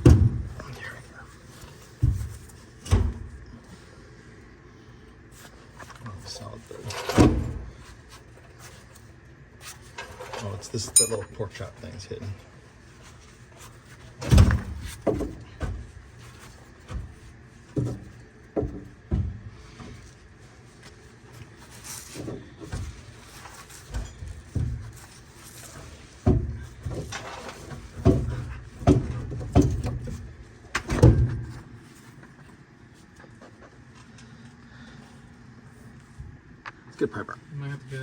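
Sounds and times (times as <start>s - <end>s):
heavy metal clunks and knocks: 0.0s - 0.6s, 26.2s - 31.7s.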